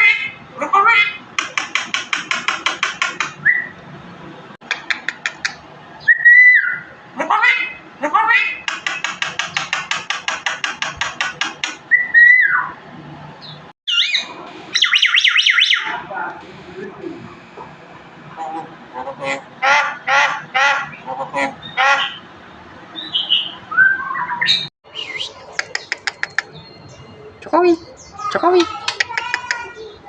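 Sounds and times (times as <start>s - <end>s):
songbird singing: 3.2s - 3.8s, 4.8s - 6.9s, 11.9s - 12.8s, 20.8s - 30.0s.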